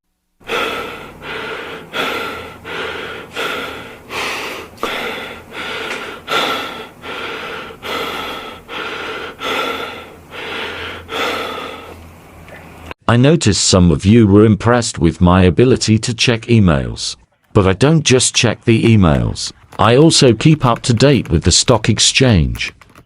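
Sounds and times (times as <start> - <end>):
person breathing hard: 0.4 - 12.1.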